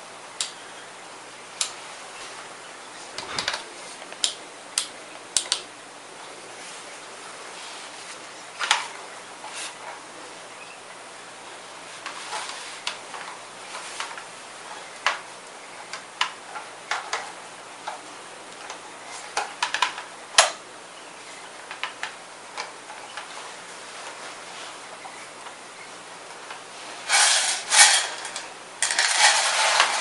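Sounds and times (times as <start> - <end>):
sharp clicks and snaps: 4.2 - 5.7.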